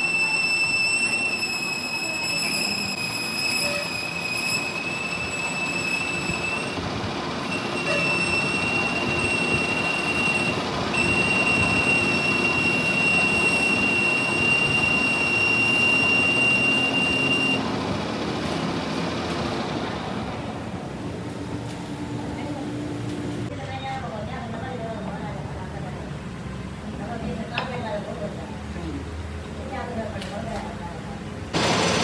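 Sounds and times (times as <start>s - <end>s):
rough metal cutting noise: 0.0s - 17.6s
cutting tool squealing: 0.0s - 17.7s.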